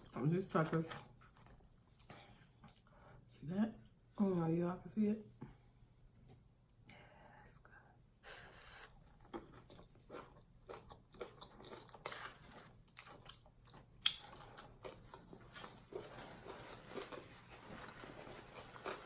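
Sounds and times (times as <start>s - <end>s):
person chewing crunchy food: 8.6s - 19.0s.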